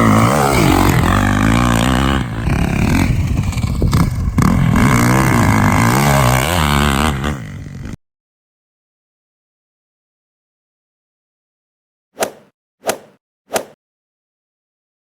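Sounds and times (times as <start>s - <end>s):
dirt bike engine revving: 0.0s - 8.0s.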